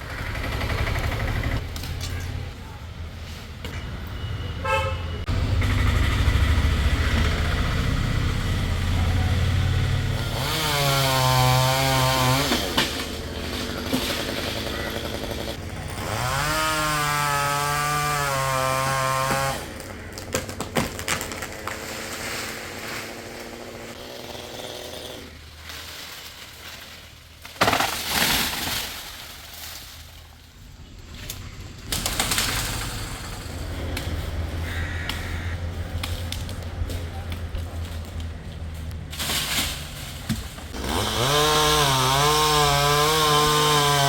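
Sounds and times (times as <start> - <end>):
chainsaw revving and cutting: 5.3 - 20.1, 21.0 - 25.5, 40.7 - 44.0.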